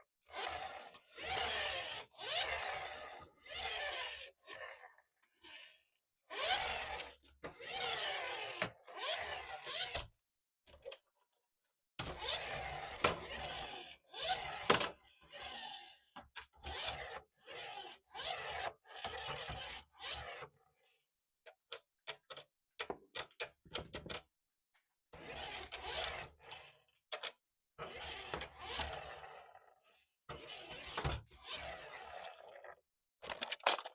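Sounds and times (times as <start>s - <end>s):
packaging crinkling and rustling: 33.2s - 33.9s.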